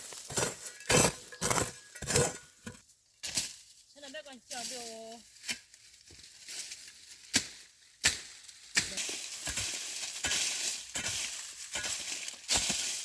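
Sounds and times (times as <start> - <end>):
rustling and scraping: 0.0 - 13.0.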